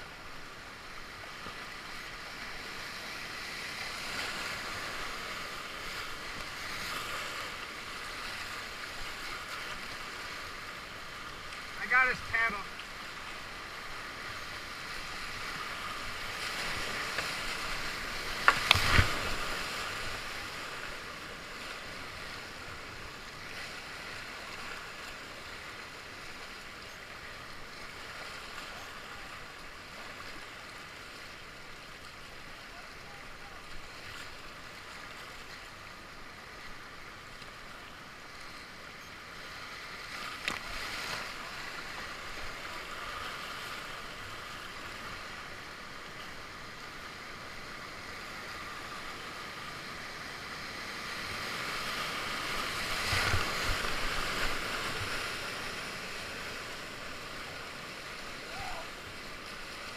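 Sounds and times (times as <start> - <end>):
rushing whitewater rapids: 0.0 - 59.9
sharp knocks and splashes: 18.4 - 19.6.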